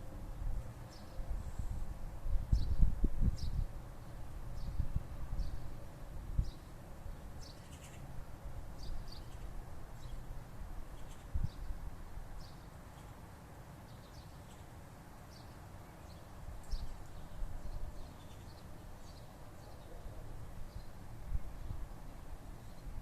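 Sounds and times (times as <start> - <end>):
small birds chirping: 7.4 - 8.1, 8.8 - 11.8, 12.4 - 13.2, 13.8 - 21.0.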